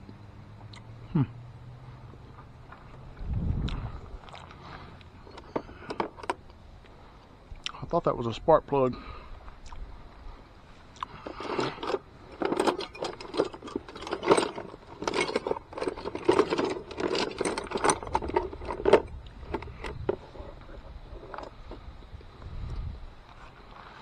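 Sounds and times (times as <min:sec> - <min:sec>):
metal hand tools clinking: 0:11.2 - 0:19.7.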